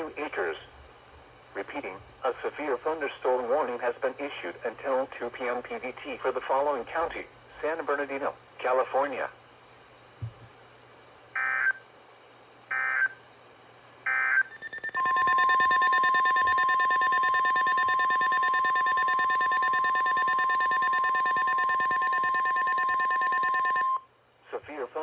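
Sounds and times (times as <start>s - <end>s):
screeching digital data bursts: 14.4s - 23.9s
steady alert tone: 14.4s - 24.0s.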